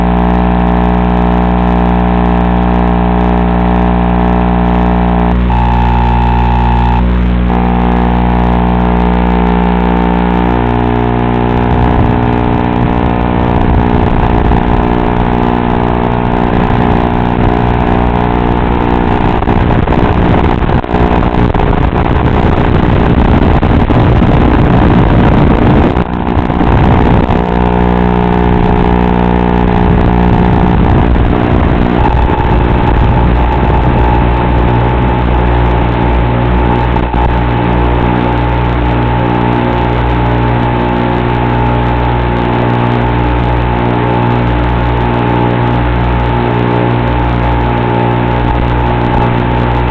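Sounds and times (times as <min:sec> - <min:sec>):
electronic humming tones: 0:00.0 - 0:49.9
loud crackling static: 0:00.0 - 0:49.9.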